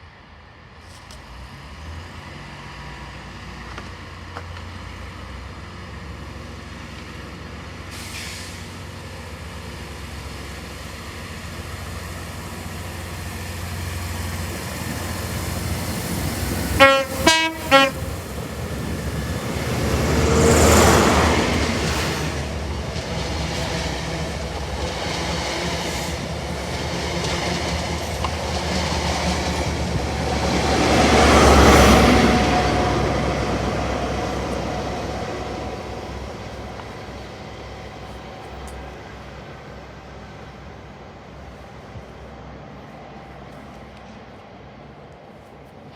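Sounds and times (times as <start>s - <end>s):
train rumble and rush: 0.0s - 45.9s
two-tone train horn blasts: 16.8s - 18.3s.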